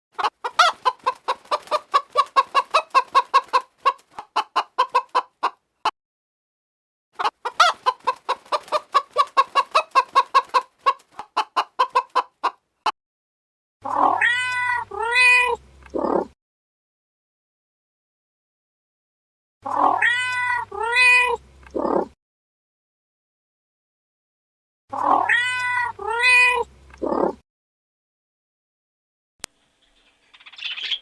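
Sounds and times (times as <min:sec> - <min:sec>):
hen clucking rapidly: 0:00.2 - 0:05.6, 0:07.2 - 0:12.6.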